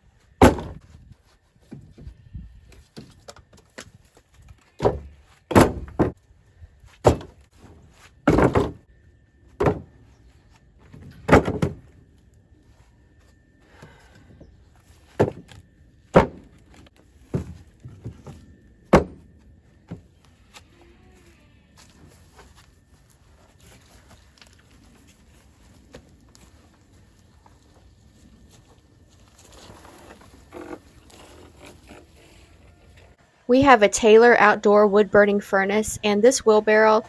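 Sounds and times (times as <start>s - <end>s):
firewood logs knocking down: 0.4s - 1.0s, 2.8s - 6.2s, 6.9s - 8.8s, 9.5s - 10.0s, 10.9s - 12.0s, 15.0s - 20.1s.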